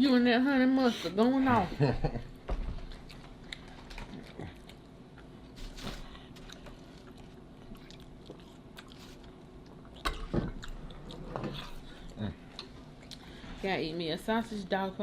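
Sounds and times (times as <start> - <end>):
chewing and biting food: 2.8 - 12.2.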